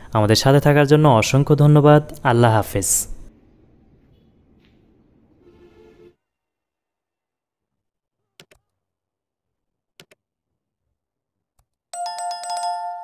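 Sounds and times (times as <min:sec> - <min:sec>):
bright ringing chime: 0:12.0 - 0:13.0.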